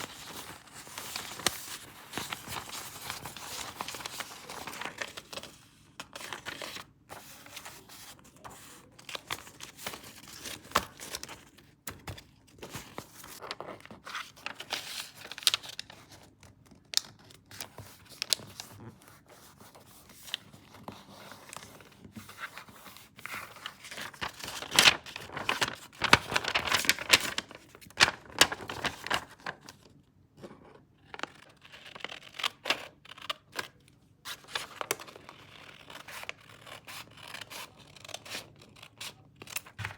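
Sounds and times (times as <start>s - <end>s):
paper rustling and tearing: 0.0s - 11.6s, 22.5s - 29.8s.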